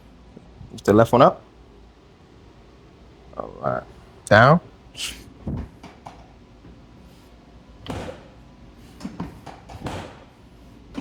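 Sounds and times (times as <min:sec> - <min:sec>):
soft thumps and knocks: 0:05.4 - 0:06.2.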